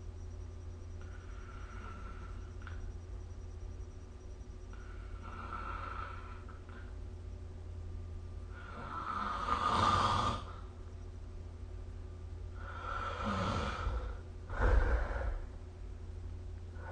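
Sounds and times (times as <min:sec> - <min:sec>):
person snoring: 0:08.5 - 0:10.6.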